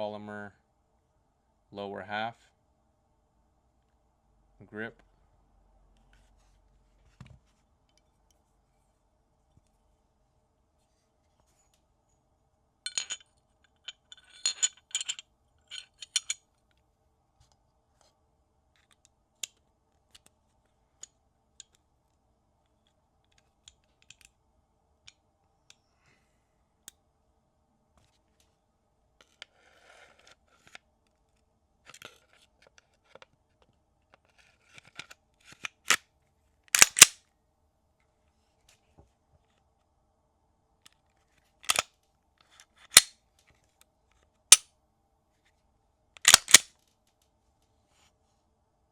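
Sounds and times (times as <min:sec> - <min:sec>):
pistol clicks and clacks: 0:36.8 - 0:37.2, 0:41.7 - 0:41.9, 0:42.9 - 0:43.1, 0:46.2 - 0:46.7.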